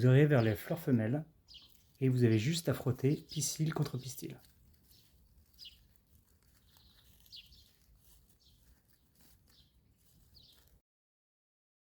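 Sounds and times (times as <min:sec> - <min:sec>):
faint bird chirps: 0:01.5 - 0:04.2, 0:04.8 - 0:10.7.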